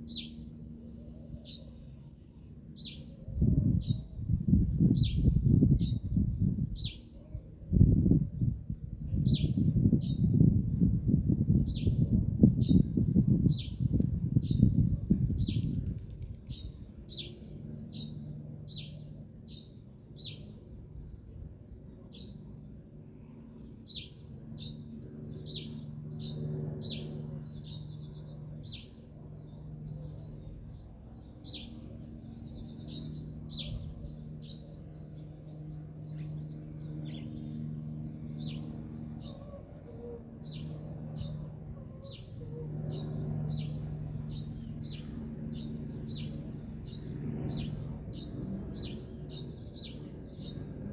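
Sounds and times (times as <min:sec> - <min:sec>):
steady low hum: 0:00.0 - 0:50.9.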